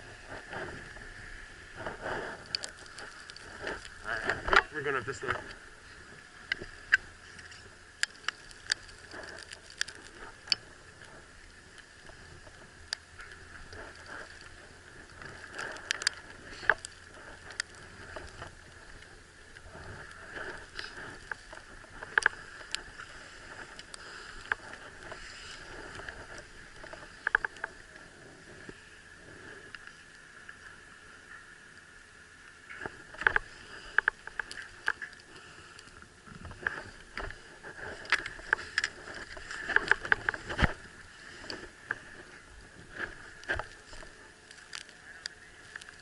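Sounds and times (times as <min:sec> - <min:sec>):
snowboard sliding over snow: 0:00.0 - 0:06.4, 0:10.0 - 0:29.7
sharp clicks and scrapes: 0:01.8 - 0:05.6, 0:06.5 - 0:28.1, 0:32.7 - 0:46.0.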